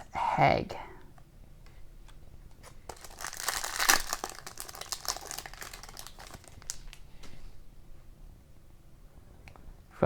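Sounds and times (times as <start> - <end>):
foil wrapper tearing and crackling: 2.9 - 7.0.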